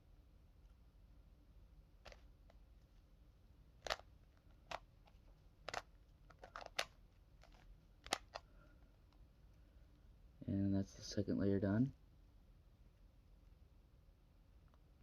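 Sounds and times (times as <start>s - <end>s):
puzzle cube layers clicking: 5.7s - 8.4s.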